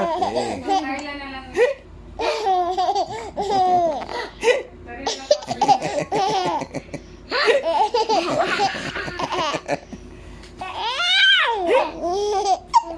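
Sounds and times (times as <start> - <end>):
baby laughing: 0.0 - 1.0, 2.2 - 4.3, 5.1 - 6.7, 7.3 - 9.7, 10.6 - 12.9.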